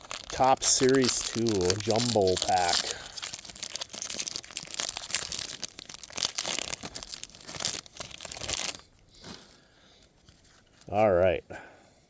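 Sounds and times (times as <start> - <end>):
foil wrapper tearing and crinkling: 0.0 - 9.0.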